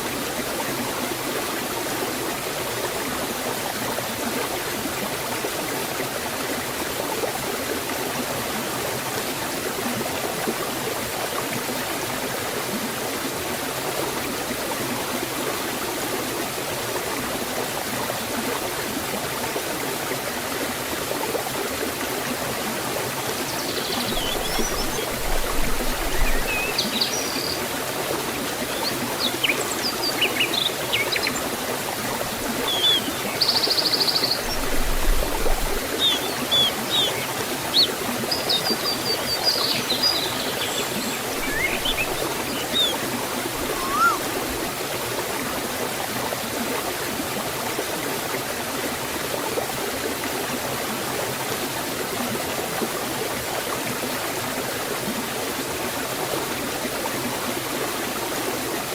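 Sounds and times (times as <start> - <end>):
waterfall flowing: 0.0 - 58.9
birds chirping: 23.5 - 27.7, 28.6 - 31.4, 32.5 - 44.5.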